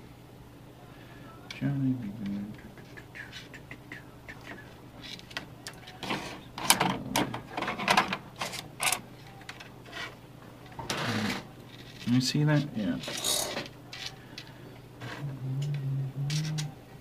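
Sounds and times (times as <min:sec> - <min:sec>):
small parts clicking and rattling: 0:11.7 - 0:14.6, 0:15.6 - 0:16.7.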